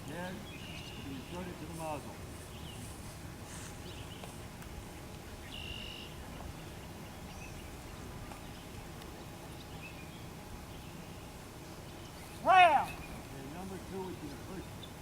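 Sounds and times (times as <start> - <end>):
faint bird chirps: 5.4 - 11.2.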